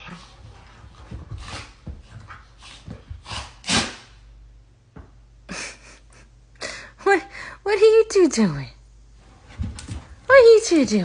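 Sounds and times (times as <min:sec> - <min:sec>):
puppies playing: 0:00.0 - 0:03.8.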